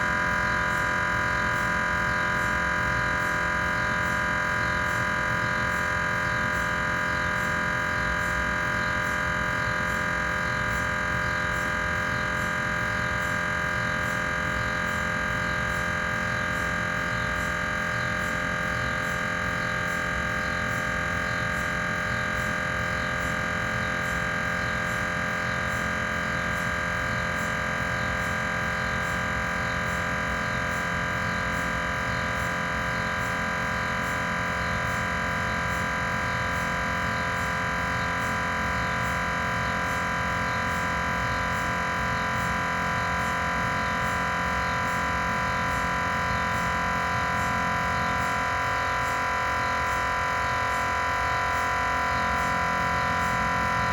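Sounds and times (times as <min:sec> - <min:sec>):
electronic drone: 0:31.4 - 0:53.9.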